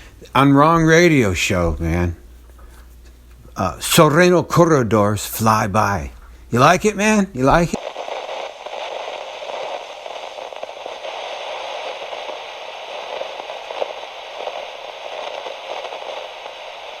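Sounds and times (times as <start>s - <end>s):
crackling radio static: 5.4s - 17.0s.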